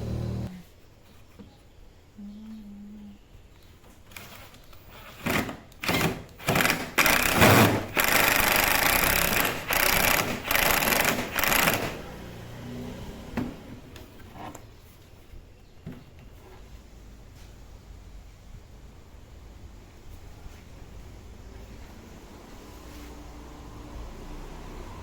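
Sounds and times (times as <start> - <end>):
power tool short bursts: 5.8 - 12.2.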